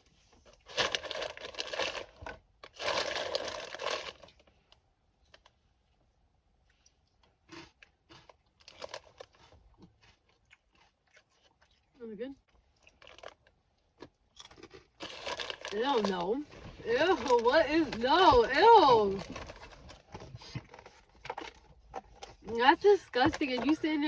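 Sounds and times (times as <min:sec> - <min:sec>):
plastic packaging crinkling and tearing: 0:00.4 - 0:04.5, 0:07.5 - 0:10.2, 0:12.8 - 0:13.6, 0:14.4 - 0:22.6.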